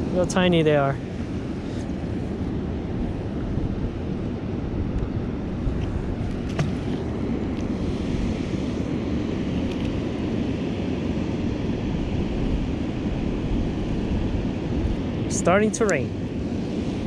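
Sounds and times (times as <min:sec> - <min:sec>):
wind rumbling on microphone: 0:00.0 - 0:17.0.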